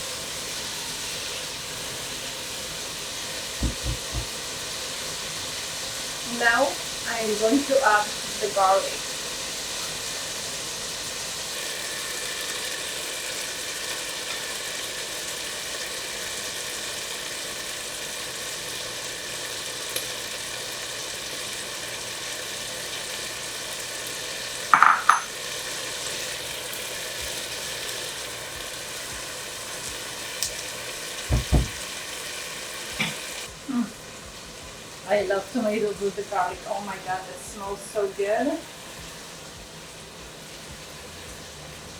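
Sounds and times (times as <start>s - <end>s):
food sizzling in a pan: 0.0s - 41.9s
low knock: 3.6s - 4.4s, 31.3s - 31.8s
utensil clinking on pan: 24.8s - 25.4s.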